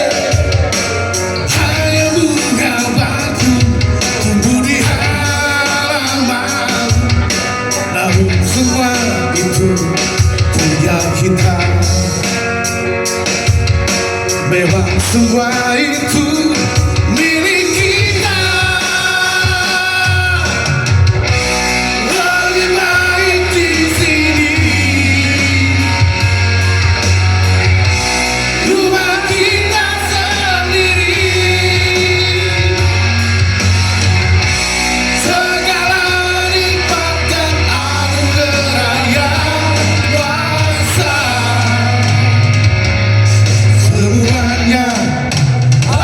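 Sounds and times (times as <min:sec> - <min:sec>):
person singing: 0:00.0 - 0:13.2, 0:14.2 - 0:27.3, 0:28.2 - 0:34.3, 0:34.9 - 0:46.0
rock band playing: 0:00.0 - 0:46.0.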